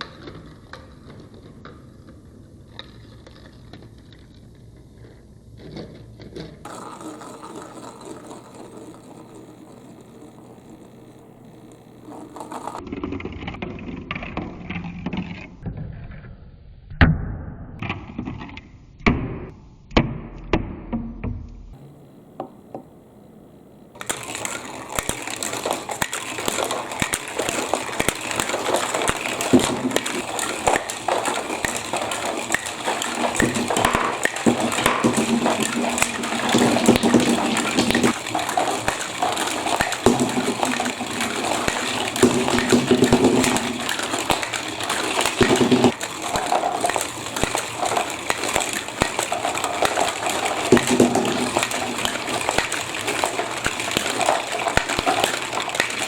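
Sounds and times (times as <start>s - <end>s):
marbles clattering on plastic tracks: 0.0s - 15.8s, 23.9s - 56.0s
water running: 6.6s - 12.8s, 21.8s - 56.0s.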